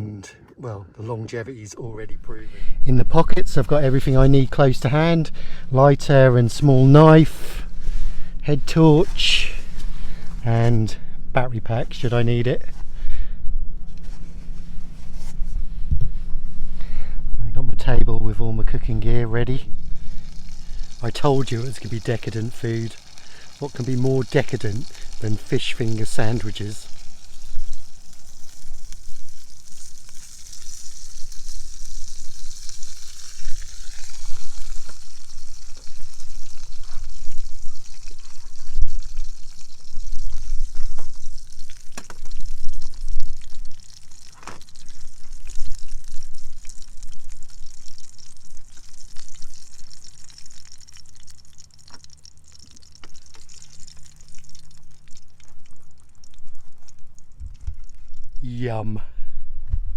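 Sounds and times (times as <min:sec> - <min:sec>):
food sizzling in a pan: 0:19.6 - 0:57.2.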